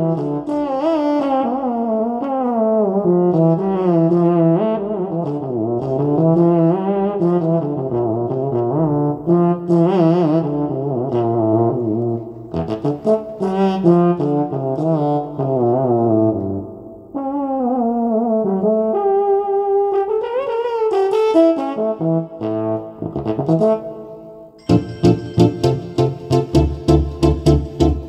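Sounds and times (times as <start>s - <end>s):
synthesizer brass melody: 20.8s - 28.0s.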